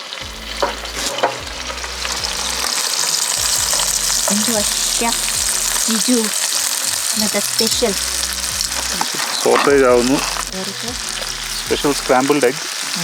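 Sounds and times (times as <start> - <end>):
food sizzling in a pan: 0.0 - 13.0.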